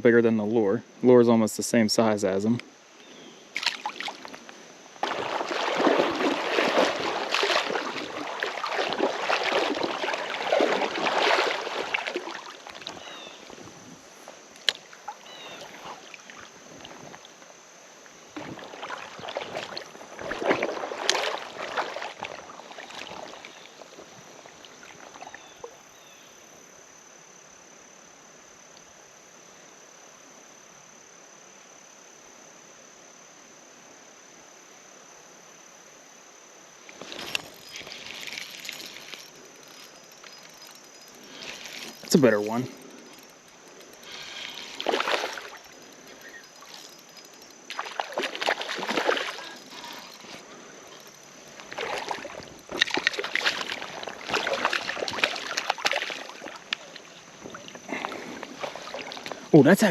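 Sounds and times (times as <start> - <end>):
flowing water hiss: 0.5 - 59.9
person wading through stream: 3.4 - 25.9, 36.8 - 59.9.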